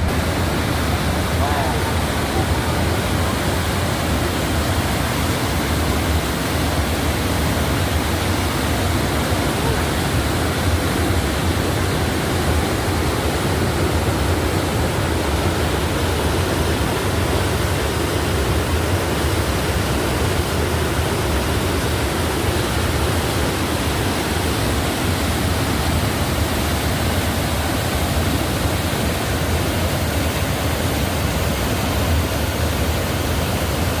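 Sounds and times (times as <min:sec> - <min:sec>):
waterfall rushing: 0:00.0 - 0:34.0.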